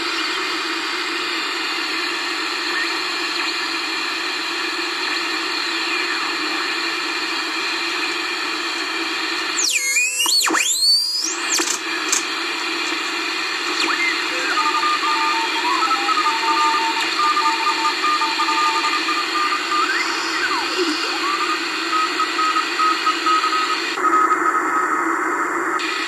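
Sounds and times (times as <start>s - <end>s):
radio band noise hiss: 0.0s - 26.0s
morse code beeps: 13.9s - 24.8s.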